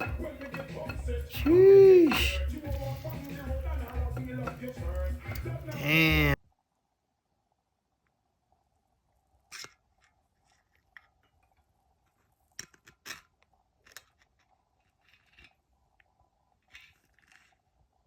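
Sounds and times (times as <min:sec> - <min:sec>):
clicks and scrapes of engine parts: 0:00.0 - 0:01.5, 0:02.1 - 0:05.8, 0:09.5 - 0:17.9.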